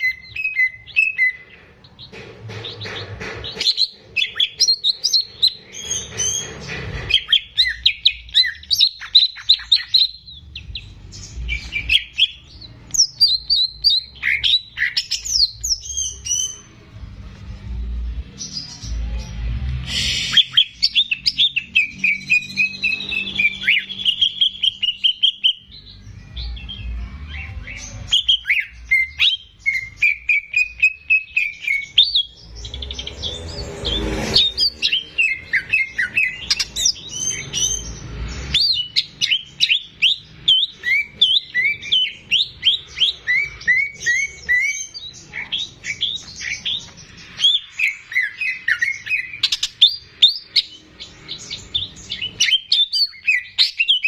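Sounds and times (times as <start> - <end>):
bird singing chirps and whistles: 0.0 - 1.5, 3.6 - 6.4, 7.1 - 16.6, 19.9 - 26.0, 27.3 - 54.0
low rumble: 32.0 - 37.1.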